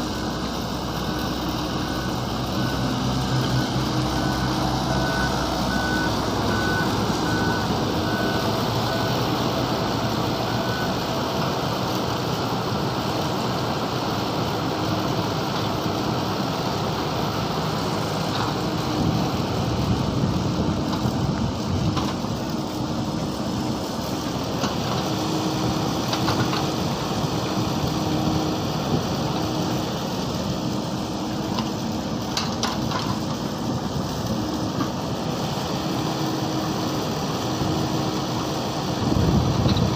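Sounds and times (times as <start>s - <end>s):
excavator engine running: 0.0s - 39.9s
beeping alarm: 1.1s - 9.4s.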